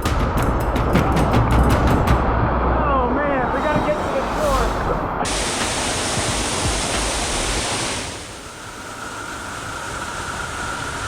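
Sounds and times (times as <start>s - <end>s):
waterfall and fast current rushing: 3.3s - 11.0s.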